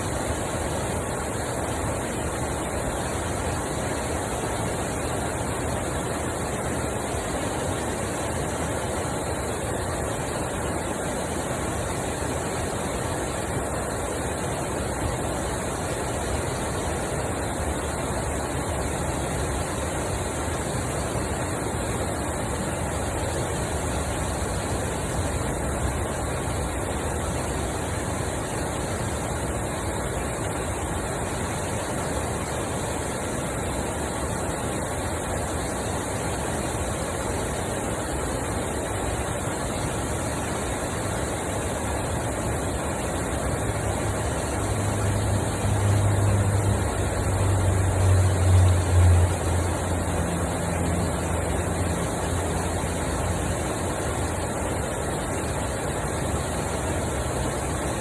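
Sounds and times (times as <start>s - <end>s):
low engine hum: 43.6s - 55.2s.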